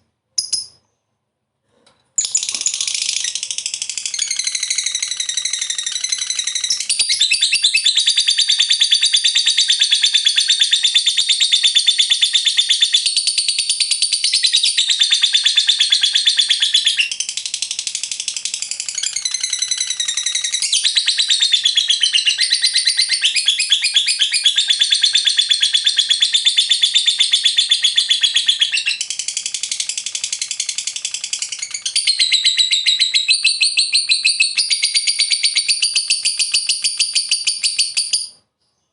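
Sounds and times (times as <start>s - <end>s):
lovebird chattering trill: 18.4s - 38.3s.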